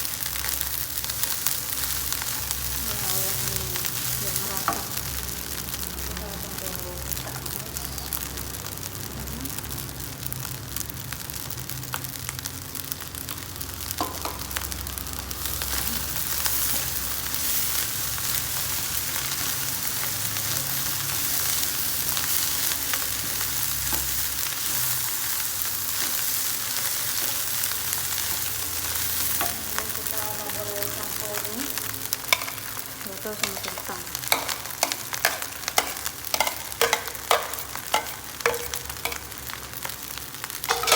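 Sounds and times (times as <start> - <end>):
rice sizzling in a pan: 0.0 - 40.9
spatula scraping a pan: 33.4 - 39.4.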